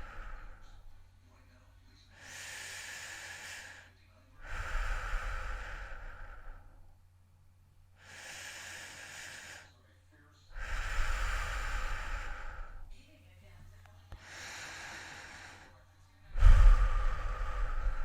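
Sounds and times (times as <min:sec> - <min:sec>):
person breathing heavily: 0:00.0 - 0:00.9, 0:02.1 - 0:06.8, 0:08.0 - 0:09.8, 0:10.5 - 0:12.9, 0:14.2 - 0:18.0
low rumble: 0:16.3 - 0:18.0.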